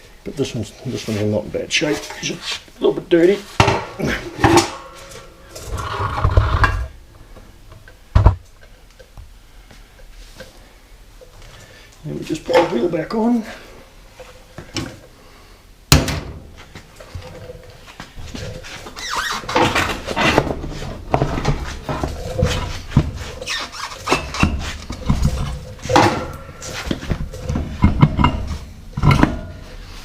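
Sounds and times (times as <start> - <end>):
metal clunks scrapes and squeaks: 4.3 - 6.9, 18.6 - 29.6.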